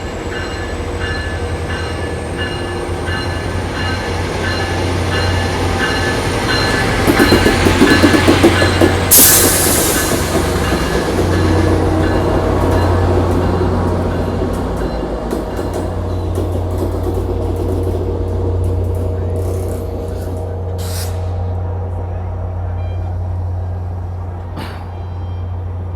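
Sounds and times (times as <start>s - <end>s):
train bell ringing: 0.0s - 17.0s, 22.7s - 23.8s, 24.8s - 25.8s
locomotive engine humming: 0.0s - 25.9s
rhythmic train clatter: 0.0s - 25.9s
sharp hiss of air: 9.1s - 10.4s, 20.8s - 21.4s.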